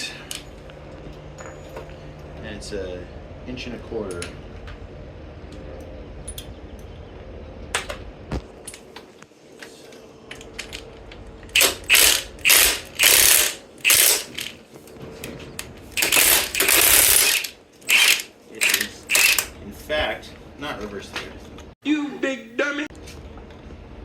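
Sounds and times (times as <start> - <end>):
impact wrench hammering: 11.6 - 14.5, 16.0 - 19.5.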